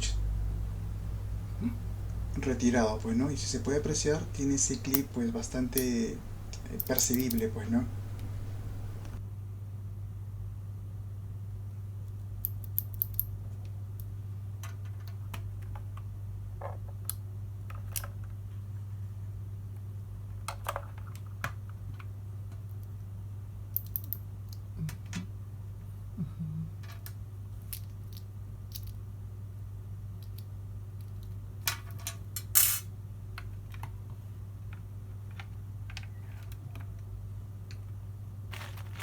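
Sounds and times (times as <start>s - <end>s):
steady low hum: 0.0s - 9.6s, 24.7s - 26.8s.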